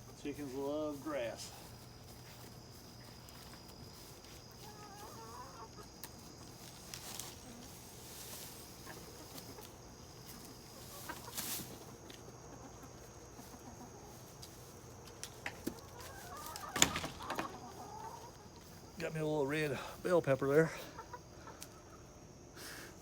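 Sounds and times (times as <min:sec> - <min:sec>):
chickens clucking softly: 0:01.5 - 0:18.9, 0:20.6 - 0:22.5
rustling: 0:06.1 - 0:12.1.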